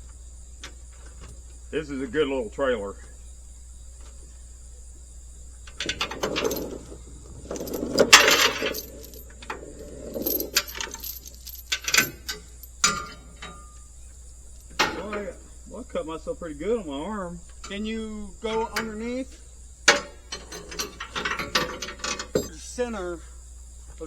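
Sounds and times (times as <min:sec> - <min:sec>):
metal chain clinking and rattling: 0:05.7 - 0:13.8, 0:19.9 - 0:22.6.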